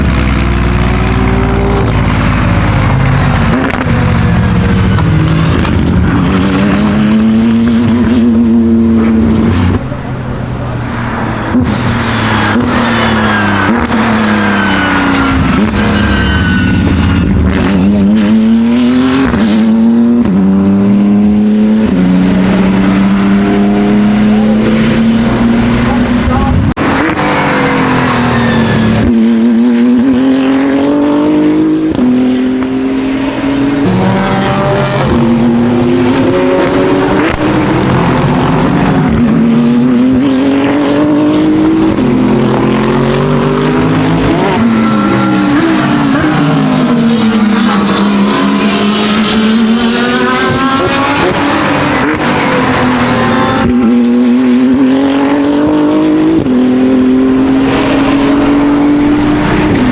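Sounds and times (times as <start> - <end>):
race car engine revving: 0.0 - 59.9.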